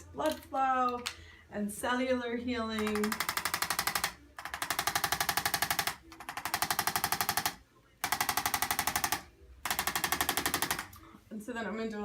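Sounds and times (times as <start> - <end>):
adjusting instrument clicking rapidly: 2.8 - 11.0.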